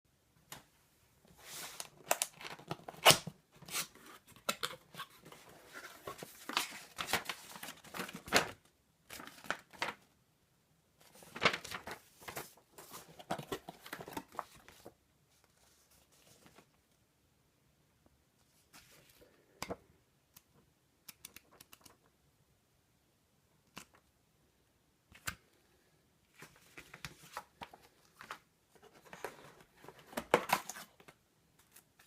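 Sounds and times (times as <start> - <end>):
packaging rustling: 11.1 - 14.9.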